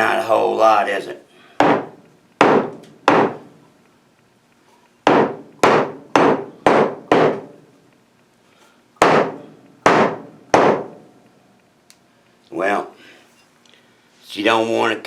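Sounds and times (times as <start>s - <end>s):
knocks on metal cylinder: 1.6s - 3.4s, 5.1s - 7.6s, 9.0s - 11.0s.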